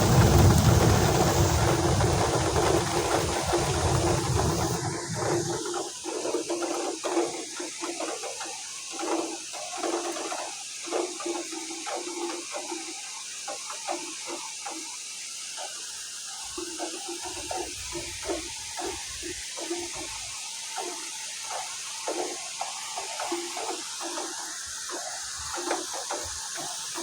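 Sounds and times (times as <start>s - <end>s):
loud low rumble: 0.0s - 5.6s
heavy rain pouring: 0.0s - 6.2s
rain spattering and dripping: 0.0s - 14.8s.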